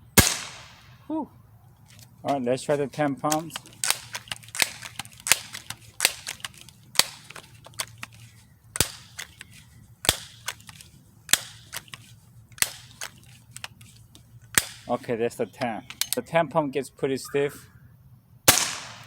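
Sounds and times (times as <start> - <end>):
air pistol pump clacking: 3.2 - 15.0, 15.6 - 16.2.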